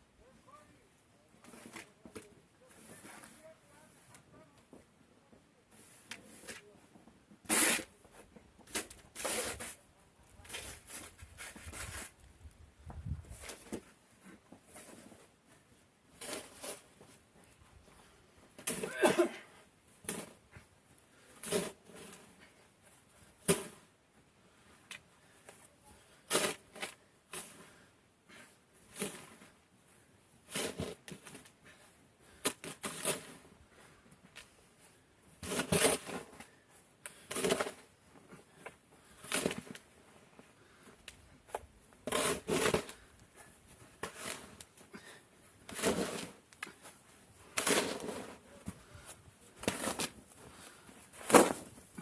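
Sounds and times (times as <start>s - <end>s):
crunching scraping in snow: 45.7s - 46.4s, 47.5s - 49.0s.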